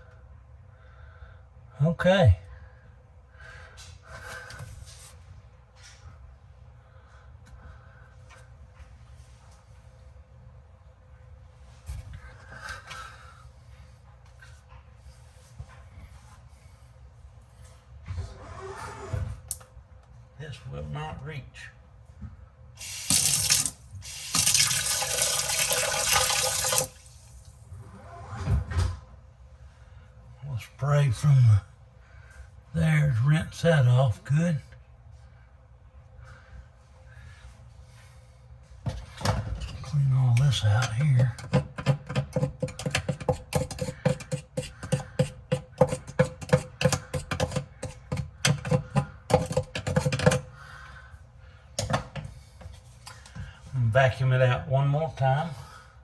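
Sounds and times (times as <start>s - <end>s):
water spraying from faucet: 22.8s - 27.3s.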